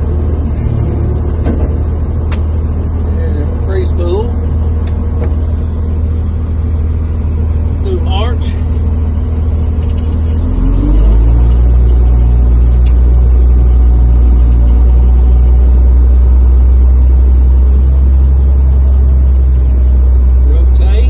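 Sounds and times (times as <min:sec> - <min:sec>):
diesel engine revving: 0:00.0 - 0:21.0.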